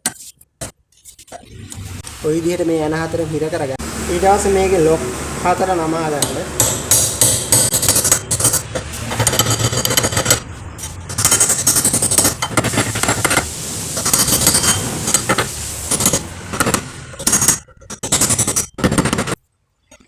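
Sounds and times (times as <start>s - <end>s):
metal tools tapping and scraping: 6.2s - 20.0s.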